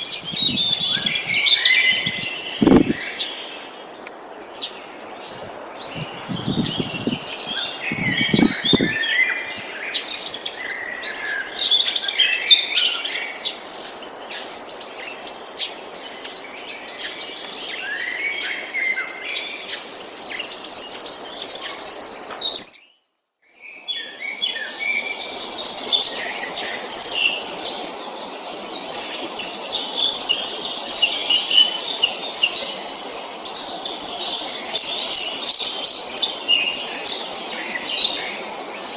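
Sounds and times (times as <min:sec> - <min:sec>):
songbirds singing and chirping: 0:00.0 - 0:38.9
outdoor hiss: 0:23.9 - 0:38.9.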